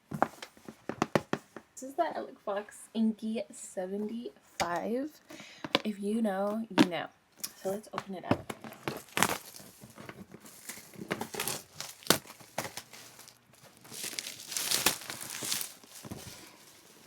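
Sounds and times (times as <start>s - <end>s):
packaging rustling and crinkling: 8.4s - 17.0s.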